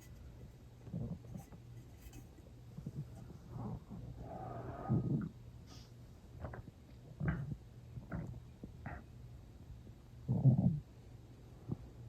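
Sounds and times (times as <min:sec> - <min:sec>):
stomach growling: 0:00.8 - 0:01.6, 0:02.8 - 0:05.4, 0:07.2 - 0:09.1, 0:10.3 - 0:10.9.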